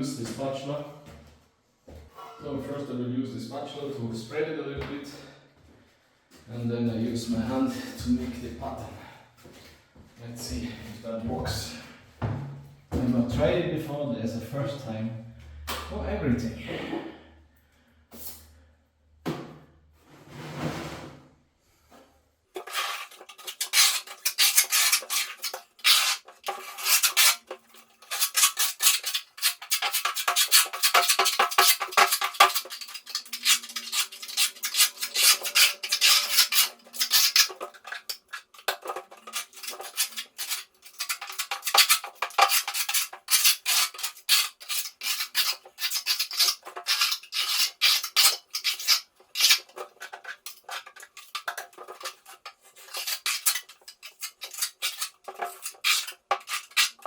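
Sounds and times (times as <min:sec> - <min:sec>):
spatula scraping plaster on wall: 0:22.5 - 0:57.0.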